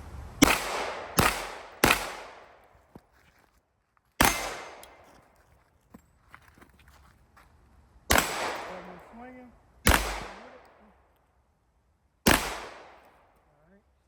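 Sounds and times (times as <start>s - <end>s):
gunshots with echo: 0.4s - 2.6s, 4.2s - 4.9s, 8.1s - 9.2s, 9.8s - 10.6s, 12.3s - 13.1s.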